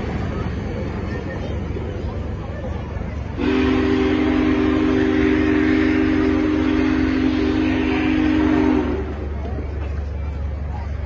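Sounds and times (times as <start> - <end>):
steam locomotive whistle: 3.4 - 9.3.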